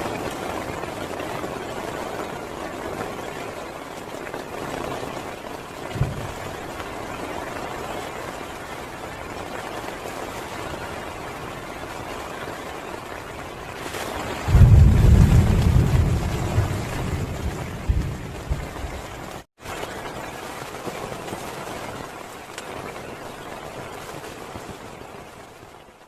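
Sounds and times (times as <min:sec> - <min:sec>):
heavy rain: 0:00.0 - 0:26.0
brief low thump: 0:06.0 - 0:06.4.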